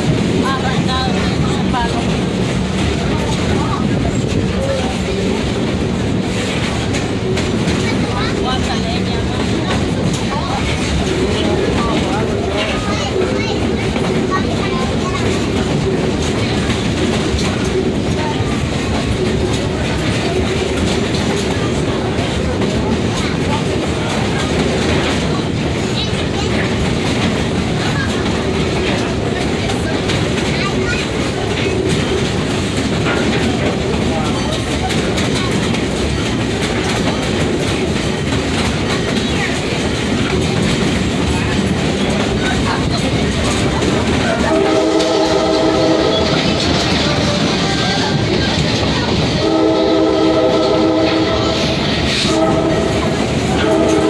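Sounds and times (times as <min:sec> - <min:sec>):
train car rolling on track: 0:00.0 - 0:54.0
train horn blast: 0:44.4 - 0:47.6, 0:49.4 - 0:54.0.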